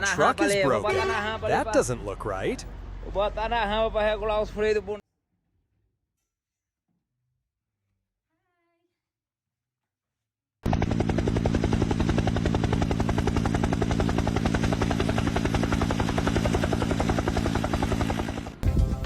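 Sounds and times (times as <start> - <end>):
pulsing engine drone: 10.6 - 18.7.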